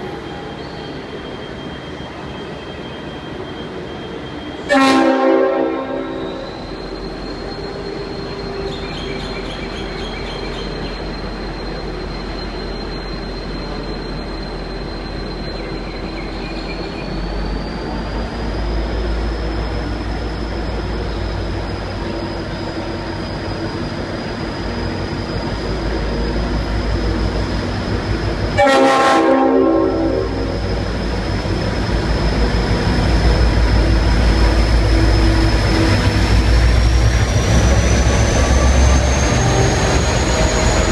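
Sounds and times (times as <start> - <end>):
diesel locomotive running: 0.0 - 40.9
locomotive air horn blast: 4.7 - 6.6, 28.6 - 30.6.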